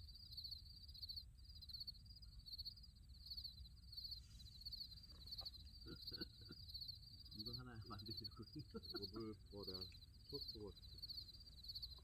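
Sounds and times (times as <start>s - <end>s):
crickets chirping: 0.0s - 12.0s.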